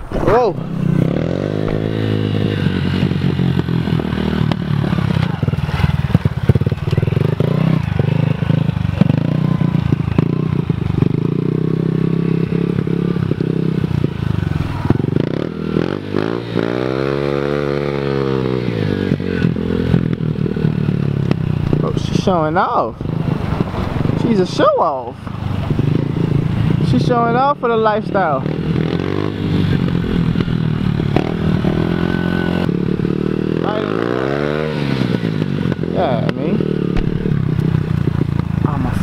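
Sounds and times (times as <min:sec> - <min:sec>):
dirt bike engine revving: 0:00.3 - 0:39.0.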